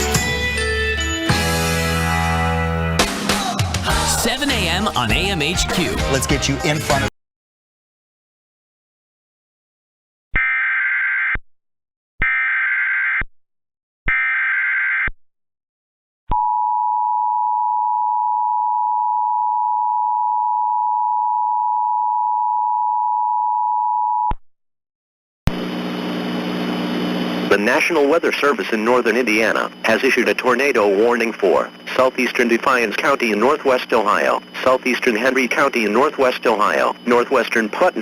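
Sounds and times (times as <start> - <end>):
harsh electronic data screech: 27.5 - 38.0.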